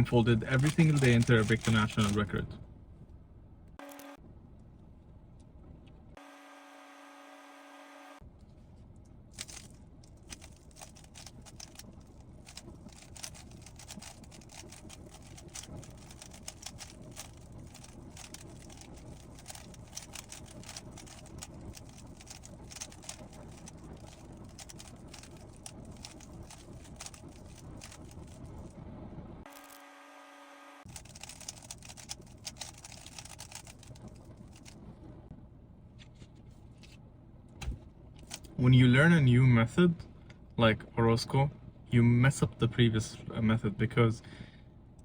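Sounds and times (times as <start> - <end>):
plastic puzzle cube clicking: 12.5 - 28.3, 31.0 - 33.9.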